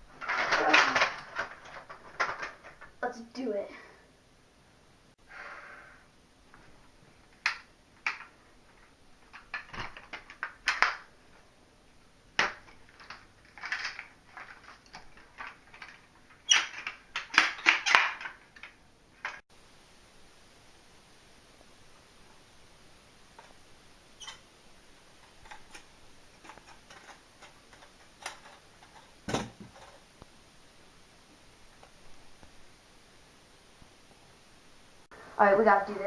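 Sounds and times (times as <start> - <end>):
objects knocking and clattering: 0.0 - 3.0, 7.3 - 11.1, 12.4 - 19.4, 25.2 - 30.1.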